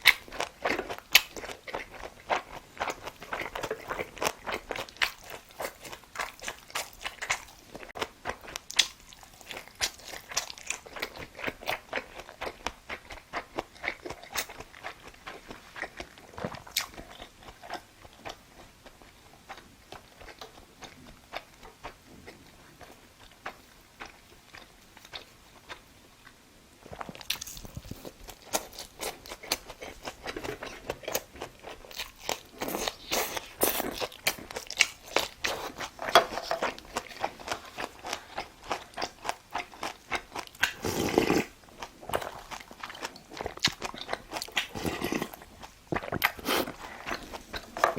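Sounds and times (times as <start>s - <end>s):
person chewing food: 0.0s - 47.9s.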